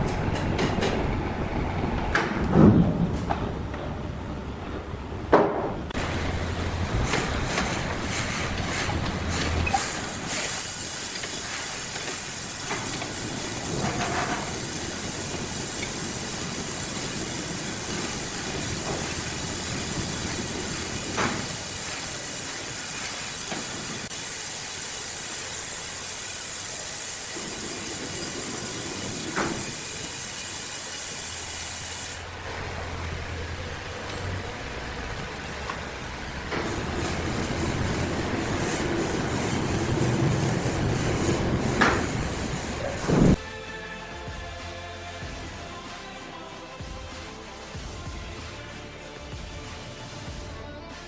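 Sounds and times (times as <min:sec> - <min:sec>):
sawmill machinery hissing: 0:06.0 - 0:43.9.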